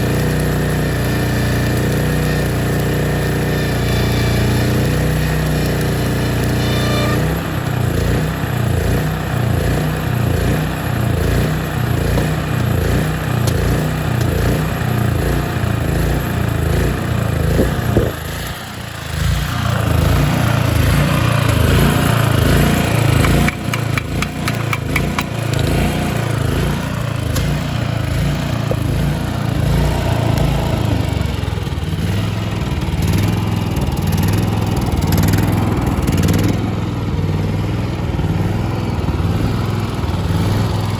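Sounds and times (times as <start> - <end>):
welder generator engine running: 0.0 - 40.9
sharp crackling clicks: 0.1 - 7.8, 11.9 - 14.8, 22.4 - 28.9.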